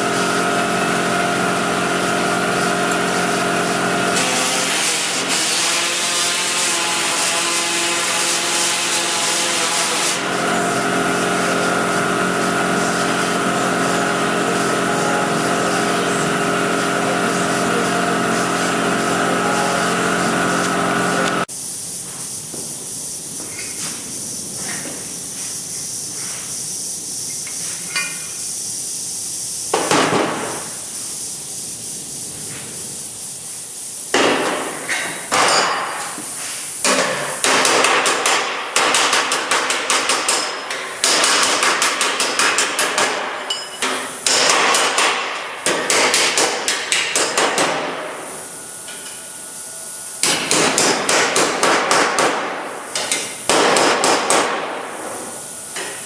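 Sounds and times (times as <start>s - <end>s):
steady hiss: 21.4s - 38.8s, 39.4s - 56.0s
hammer tapping on sheet metal: 36.9s - 43.6s, 44.2s - 47.8s.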